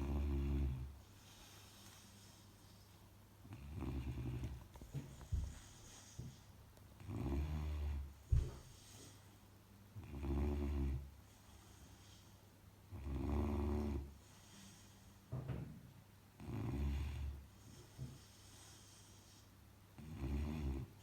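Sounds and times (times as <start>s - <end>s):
puppy snoring: 0.0s - 2.4s, 3.4s - 6.4s, 7.0s - 9.2s, 10.0s - 12.2s, 12.9s - 14.9s, 16.4s - 21.0s
faint breathing: 1.0s - 3.0s, 4.9s - 6.6s, 11.2s - 12.7s, 14.0s - 15.4s, 17.2s - 19.7s.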